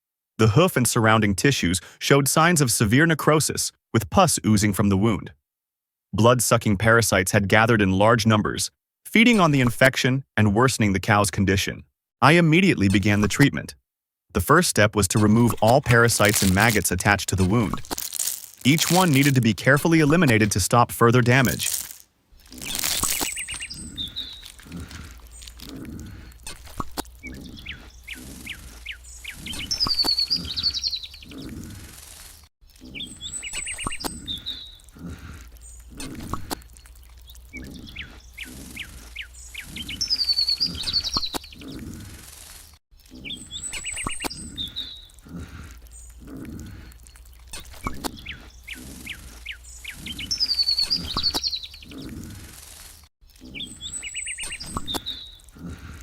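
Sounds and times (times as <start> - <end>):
birds chirping and whistling: 21.4 - 32.2, 32.8 - 42.4, 43.0 - 52.6, 53.4 - 55.8.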